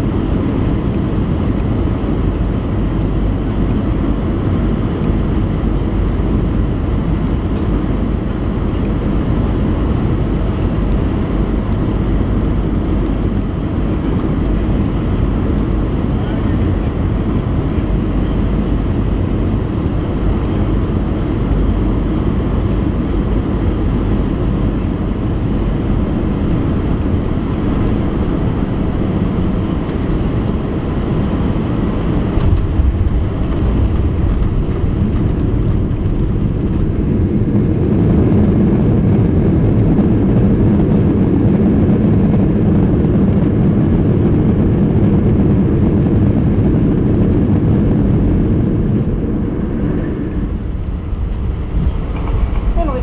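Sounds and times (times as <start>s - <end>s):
jet engines and wheels rumbling: 0.0s - 53.0s.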